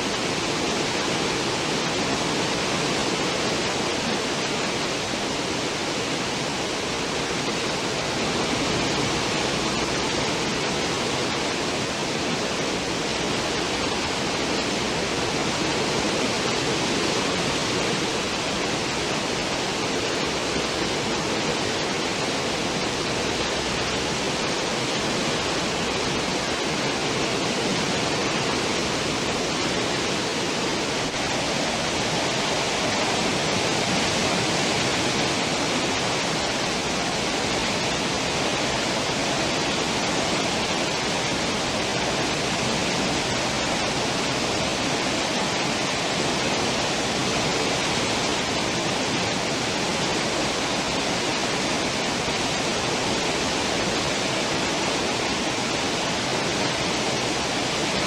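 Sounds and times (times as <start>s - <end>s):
rush of foaming water: 0.0s - 58.0s.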